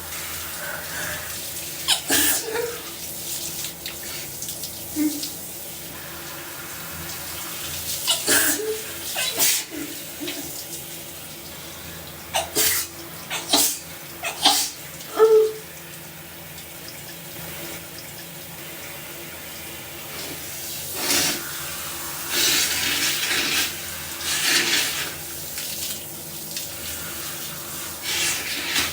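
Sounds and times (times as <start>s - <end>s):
shower spray running: 0.0s - 28.9s
woman sneezing: 1.9s - 2.9s, 8.1s - 10.0s.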